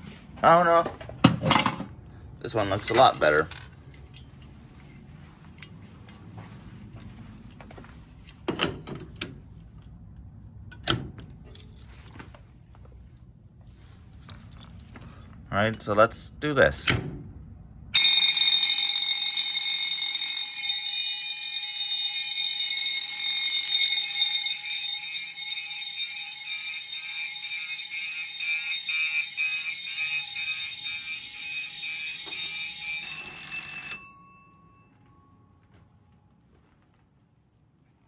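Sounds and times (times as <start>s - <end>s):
pulsing alarm tone: 18.0s - 33.8s
fire alarm bells ringing: 18.0s - 35.8s.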